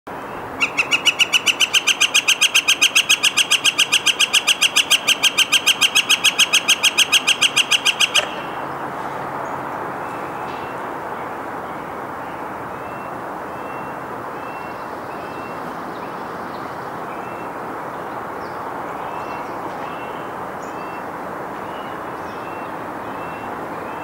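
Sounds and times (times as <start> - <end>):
bird giving fast wick call: 0.6 - 8.6.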